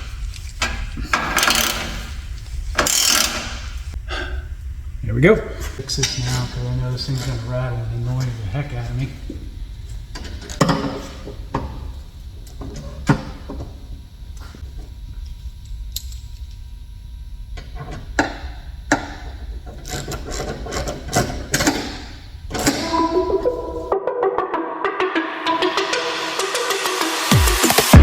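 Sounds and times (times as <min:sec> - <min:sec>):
low steady hum: 0:00.0 - 0:23.9
music: 0:22.6 - 0:28.0.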